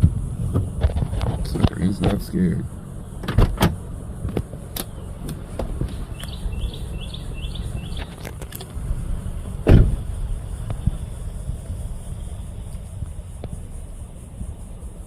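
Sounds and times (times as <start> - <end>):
steady low rumble: 0.0 - 15.0
small bird chirping: 4.8 - 8.2
loud thump: 9.6 - 10.0.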